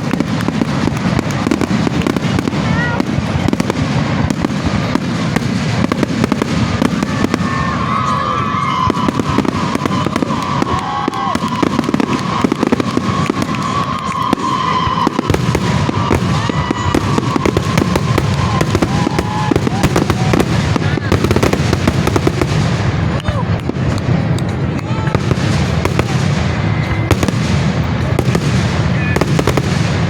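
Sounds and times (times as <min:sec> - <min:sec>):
firework whistling: 0:00.0 - 0:23.5
fireworks bangs and crackles: 0:00.0 - 0:30.0.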